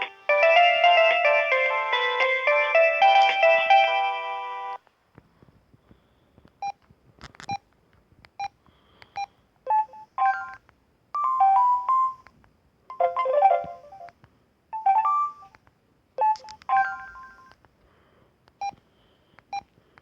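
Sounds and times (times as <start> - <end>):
ringtone melody: 0.0 - 4.8, 9.7 - 10.6, 11.2 - 12.2, 12.9 - 14.1, 14.8 - 15.5, 16.2 - 17.4
keypad beeps: 9.2 - 10.6, 14.8 - 15.6, 16.2 - 17.5.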